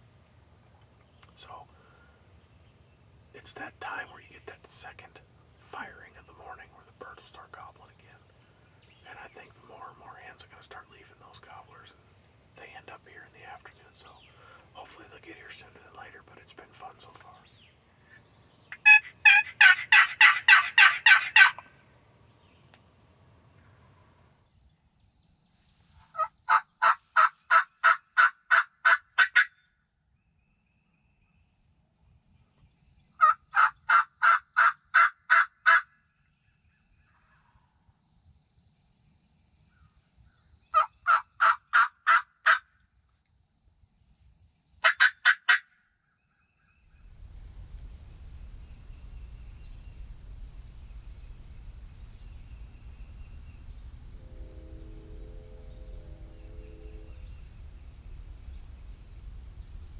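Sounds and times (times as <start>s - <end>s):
turkey yelping: 18.7s - 21.7s, 44.8s - 45.6s
low rumble: 47.0s - 59.9s.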